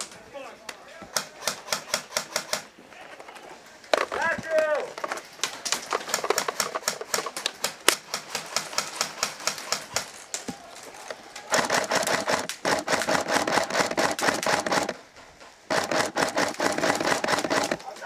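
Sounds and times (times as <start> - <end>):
airsoft guns firing rapid shots: 1.1 - 2.7, 5.8 - 10.1, 11.5 - 15.0, 15.7 - 17.9.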